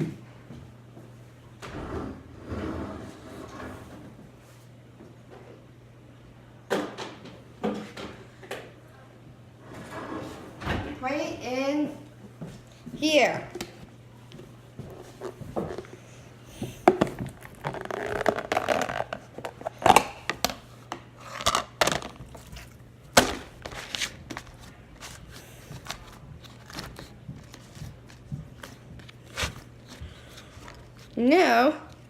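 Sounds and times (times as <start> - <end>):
plastic crinkling and scraping: 16.6 - 20.6, 21.2 - 32.0.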